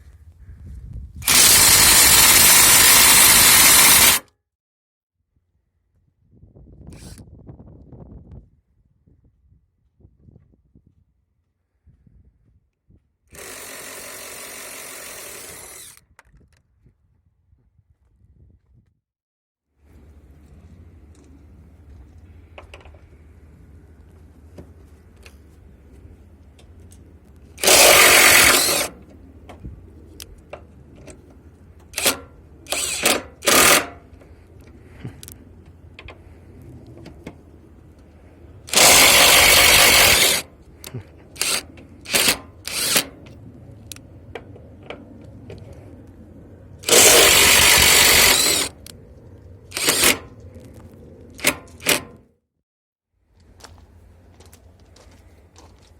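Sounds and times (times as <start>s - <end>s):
impact wrench hammering: 27.6s - 28.9s, 38.7s - 40.4s.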